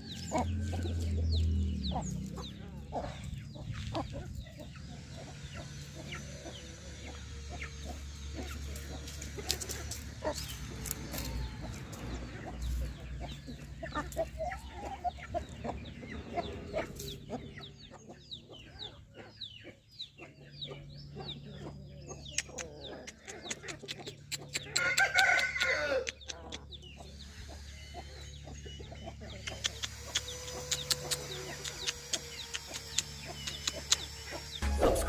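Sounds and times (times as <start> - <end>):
rooster crow: 0.0 - 1.2, 24.8 - 26.2
chickens clucking: 0.0 - 35.0.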